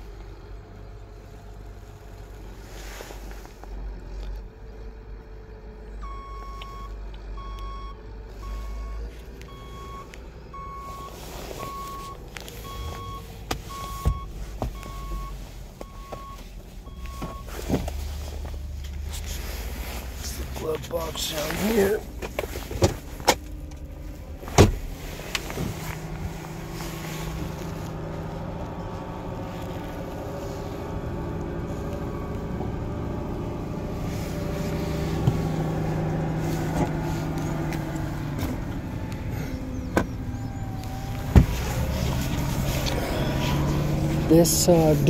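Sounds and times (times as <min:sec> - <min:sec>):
vehicle engine humming: 0:00.0 - 0:45.0.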